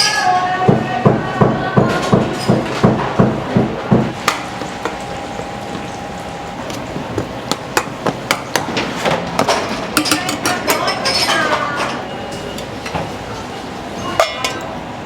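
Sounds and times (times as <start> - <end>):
utensils and dishes clinking: 0.0 - 14.9
rhythmic knocking: 0.6 - 10.5.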